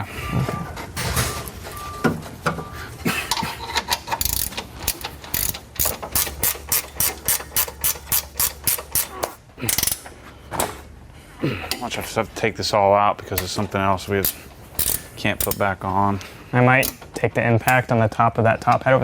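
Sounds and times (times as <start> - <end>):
clatter of tools: 3.3 - 10.7
ratchet wrench clicking: 4.0 - 10.1, 14.2 - 15.7.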